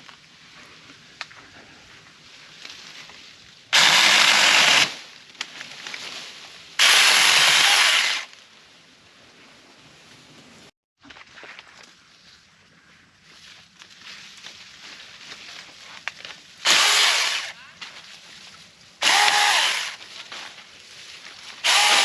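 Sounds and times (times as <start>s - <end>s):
electric chainsaw running: 3.8s - 5.0s, 6.8s - 8.3s, 16.6s - 17.5s, 19.0s - 20.0s, 21.6s - 22.0s.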